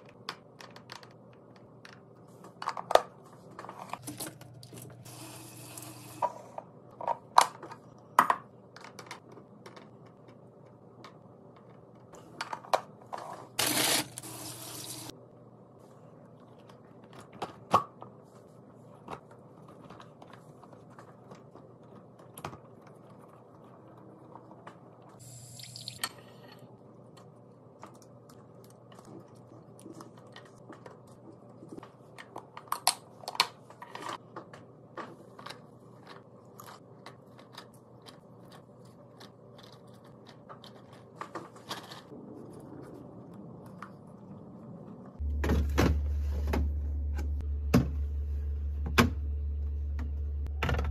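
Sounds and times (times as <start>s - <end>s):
loud low hum: 45.2s - 50.9s.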